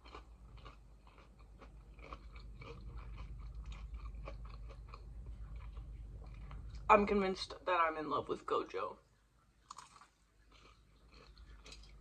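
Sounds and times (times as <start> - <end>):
chewing crunchy food: 0.0 - 6.9, 9.6 - 12.0.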